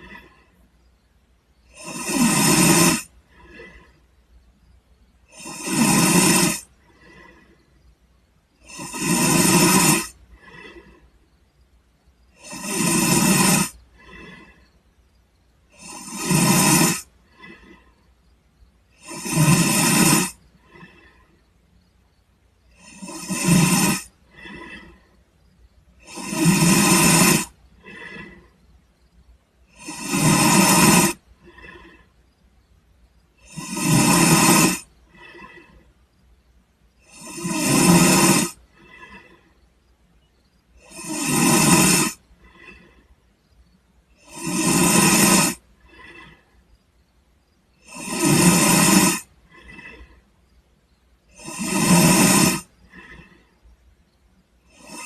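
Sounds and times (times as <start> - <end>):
person snoring: 0.0 - 0.6, 1.6 - 4.0, 5.2 - 7.6, 8.6 - 11.1, 12.3 - 14.6, 15.7 - 17.9, 18.9 - 21.4, 22.7 - 25.1, 26.0 - 28.6, 29.7 - 32.1, 33.4 - 35.9, 37.0 - 39.5, 40.8 - 43.1, 44.2 - 46.4, 47.8 - 50.2, 51.3 - 53.5, 54.6 - 55.0
soft breath out: 0.0 - 0.8, 3.2 - 4.1, 10.3 - 11.4, 13.8 - 14.9, 24.3 - 25.5, 27.8 - 28.8, 42.3 - 43.2, 45.5 - 46.7, 52.5 - 53.6
soft breath: 0.0 - 1.8, 3.0 - 5.2, 6.4 - 9.0, 10.0 - 12.4, 13.0 - 15.8, 17.0 - 18.9, 19.6 - 22.8, 23.7 - 26.0, 26.9 - 33.4, 34.2 - 36.2, 38.0 - 40.5, 41.7 - 43.8, 45.1 - 47.5, 48.6 - 50.5, 51.4 - 54.1.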